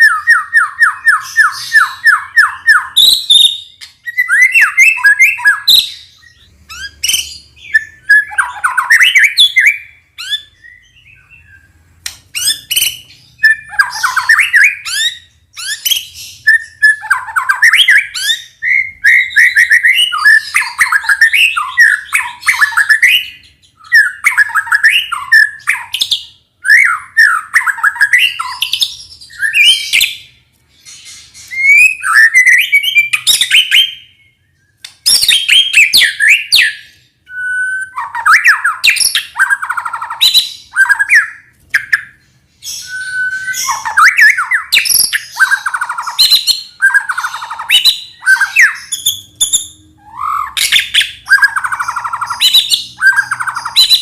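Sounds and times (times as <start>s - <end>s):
songbird singing whistles: 0.0s - 54.0s.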